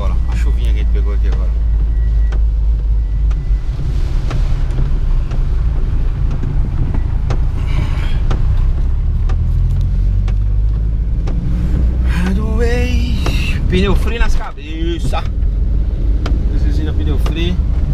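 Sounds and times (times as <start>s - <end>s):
car engine and road rumble: 0.0s - 17.9s
sharp ticks: 4.2s - 17.8s.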